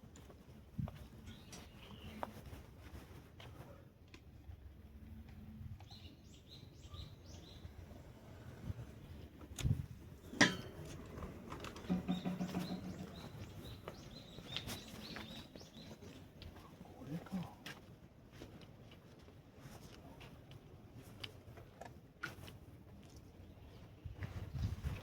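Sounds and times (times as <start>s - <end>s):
small birds chirping: 0.8s - 2.6s, 5.8s - 9.3s, 11.0s - 17.6s.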